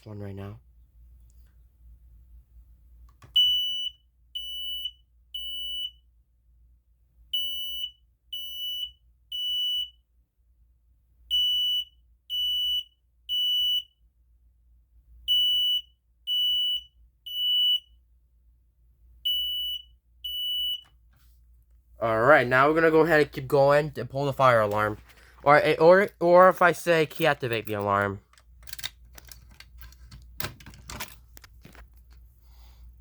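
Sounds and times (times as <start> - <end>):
smoke alarm beeps: 3.3 - 6.1, 7.4 - 10.1, 11.3 - 14.0, 15.3 - 18.0, 19.3 - 20.9.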